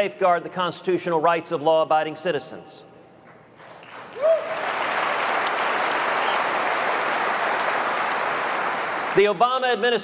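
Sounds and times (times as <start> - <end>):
audience applause: 3.8 - 9.4.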